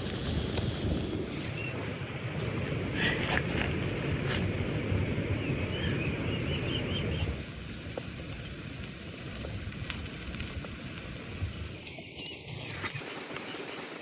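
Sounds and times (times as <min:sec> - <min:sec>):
food sizzling in a pan: 0:00.0 - 0:01.4
faint crackles: 0:00.0 - 0:14.0.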